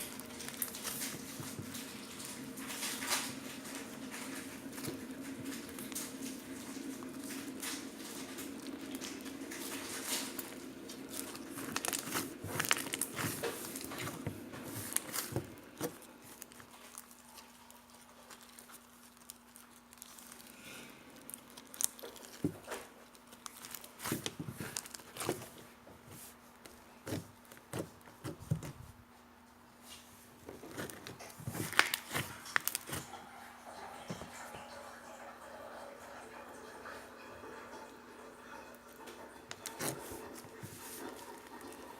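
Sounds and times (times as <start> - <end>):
slime squished by hand: 0.0 - 20.5, 21.1 - 25.6, 30.6 - 33.1, 39.5 - 41.9.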